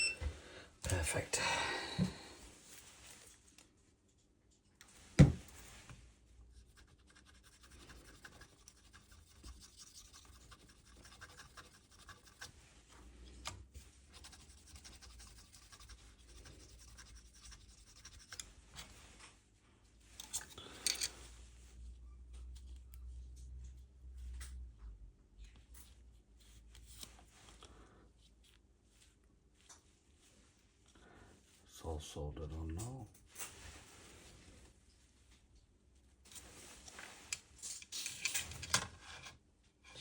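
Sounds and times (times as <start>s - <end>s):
small tool scratching: 6.5s - 12.6s, 14.1s - 18.5s.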